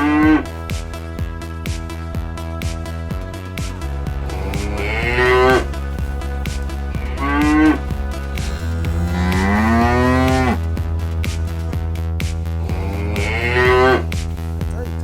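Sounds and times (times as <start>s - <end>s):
cow mooing: 0.0s - 0.6s, 4.2s - 10.6s, 12.6s - 14.1s
electronic music with steady beat: 0.0s - 15.0s.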